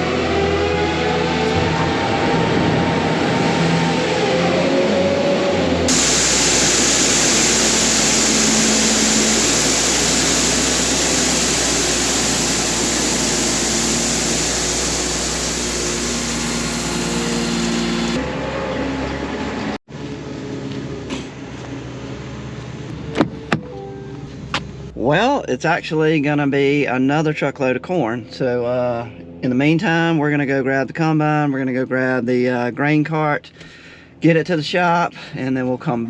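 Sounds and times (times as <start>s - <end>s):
loud machine running: 0.0s - 18.4s.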